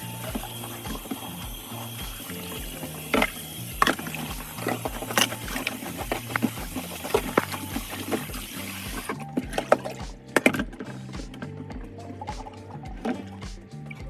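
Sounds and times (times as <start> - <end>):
background music with beat: 0.0 - 14.0
liquid splashy taps: 0.2 - 11.4.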